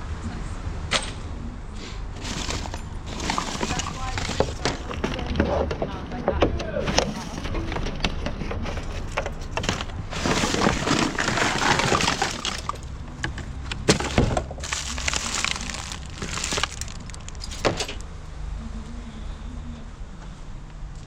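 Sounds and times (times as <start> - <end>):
hands rummaging through rubbish: 2.1 - 5.6, 8.6 - 18.0
items knocking and clattering: 2.2 - 18.0.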